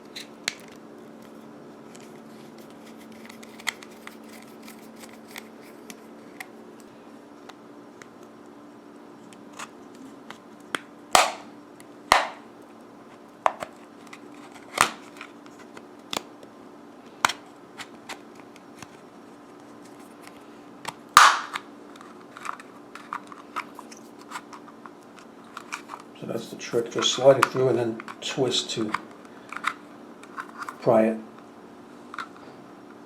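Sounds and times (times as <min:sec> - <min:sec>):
faint steady hum: 0:00.0 - 0:33.0.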